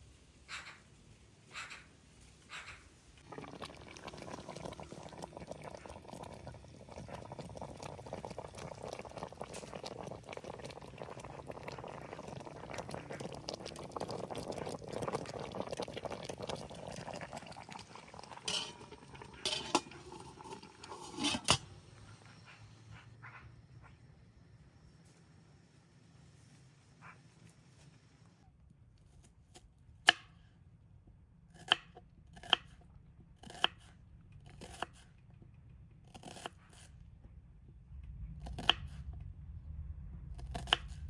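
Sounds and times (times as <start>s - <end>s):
food bubbling in a pot: 3.2s - 22.1s
utensil clinking against pot: 18.2s - 21.7s.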